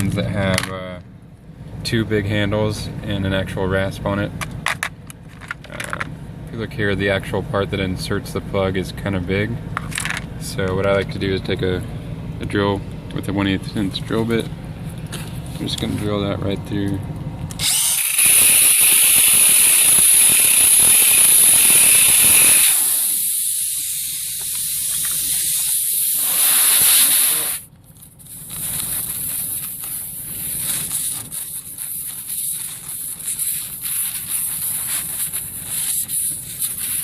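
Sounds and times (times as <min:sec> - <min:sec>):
air hissing out of tire: 0:17.8 - 0:37.0
handling noise: 0:27.8 - 0:37.0.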